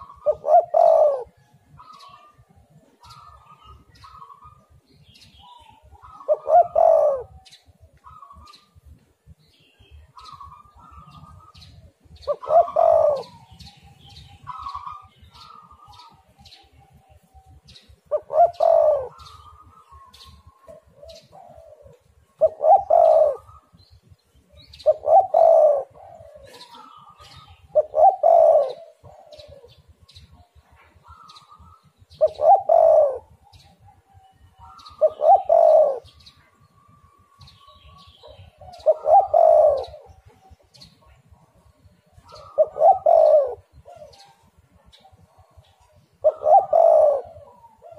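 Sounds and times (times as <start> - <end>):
dove cooing: 0.0 - 8.9, 10.0 - 47.9.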